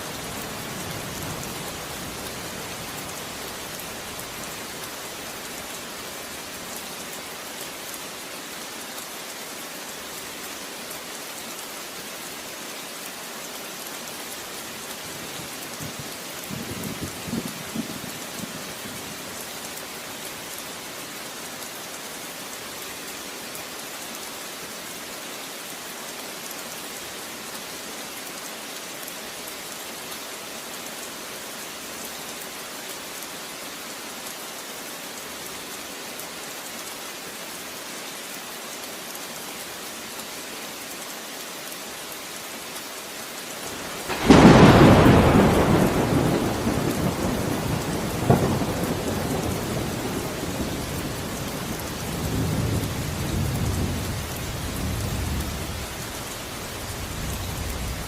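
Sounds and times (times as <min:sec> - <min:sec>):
steady rain: 0:00.0 - 0:58.0
low thunder rumbles: 0:44.0 - 0:51.4.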